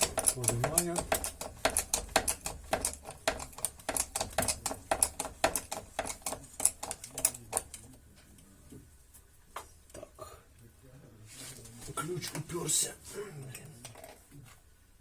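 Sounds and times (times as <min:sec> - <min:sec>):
jack clicking while pumped: 0:00.0 - 0:07.9.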